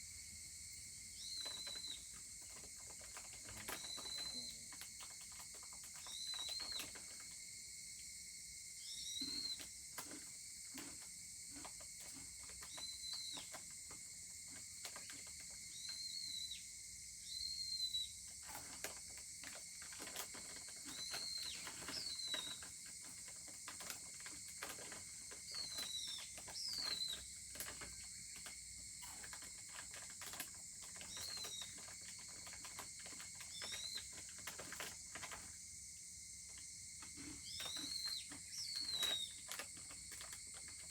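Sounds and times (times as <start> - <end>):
high insect drone: 0.0 - 40.9
short chirping calls: 8.8 - 9.6, 37.2 - 39.4.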